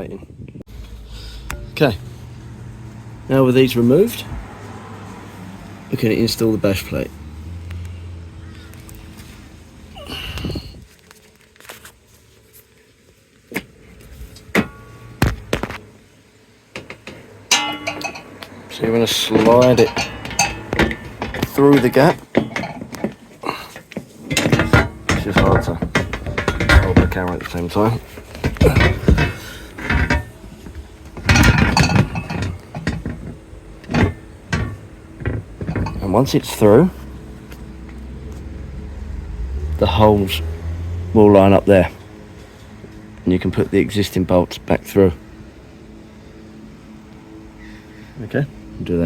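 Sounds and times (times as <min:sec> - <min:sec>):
metallic knocks and clanks: 0:01.5 - 0:02.2, 0:14.5 - 0:15.8, 0:16.7 - 0:38.3
metal plate scraping: 0:16.8 - 0:37.4.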